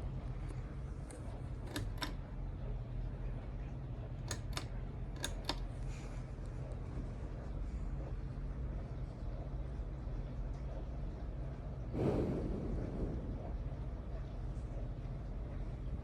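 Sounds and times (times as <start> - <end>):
ceiling fan humming: 0.0 - 16.0
sharp clicks: 0.5 - 2.2, 4.3 - 5.7.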